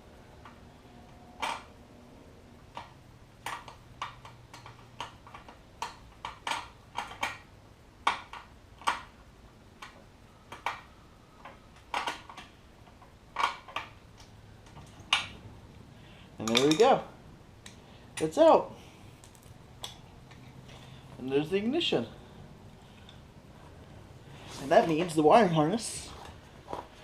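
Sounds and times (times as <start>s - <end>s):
metal tools clinking: 16.4s - 17.1s.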